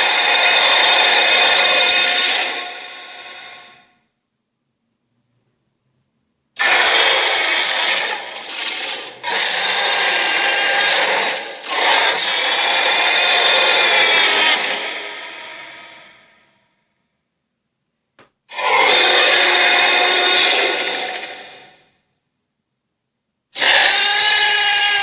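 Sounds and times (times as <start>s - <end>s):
dinosaur roar: 0.0s - 3.9s, 6.6s - 16.5s, 18.5s - 21.9s, 23.6s - 25.0s.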